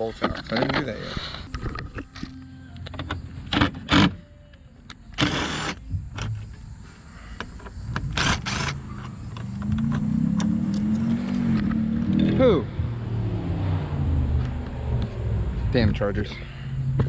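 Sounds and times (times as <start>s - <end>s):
power tool motor whirring: 5.2s - 5.8s, 8.1s - 8.8s.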